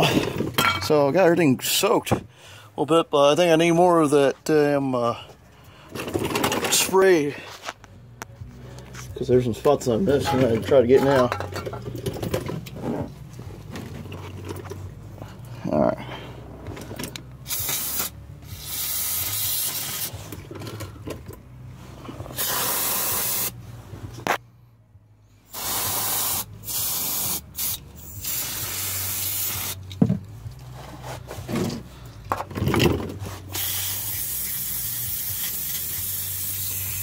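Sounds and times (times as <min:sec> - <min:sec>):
aerosol spray can hissing: 0:17.5 - 0:20.2, 0:22.4 - 0:23.6, 0:25.5 - 0:29.8, 0:33.5 - 0:37.0.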